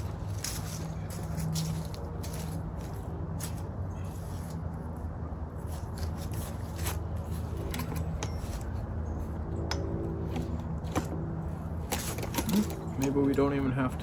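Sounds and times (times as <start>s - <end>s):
bike wheel clicks and scrapes: 5.6s - 14.0s.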